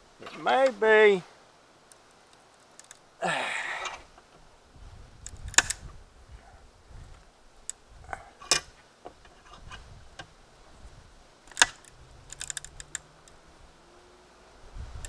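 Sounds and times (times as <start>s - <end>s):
small parts and tools clicking: 1.9s - 3.0s, 11.4s - 13.4s.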